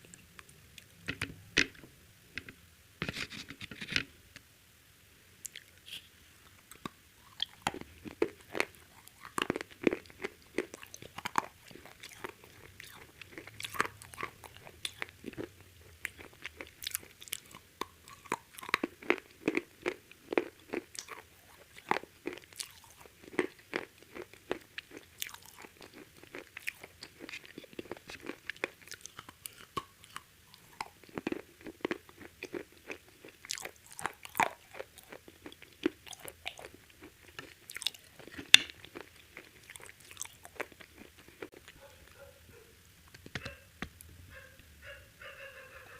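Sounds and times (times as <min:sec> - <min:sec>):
crunching fried chicken: 0:06.7 - 0:41.9.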